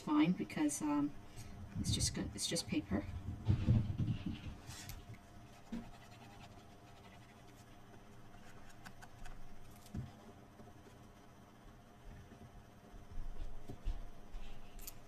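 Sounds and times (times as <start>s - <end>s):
scratching and handling cardstock: 4.2s - 10.1s.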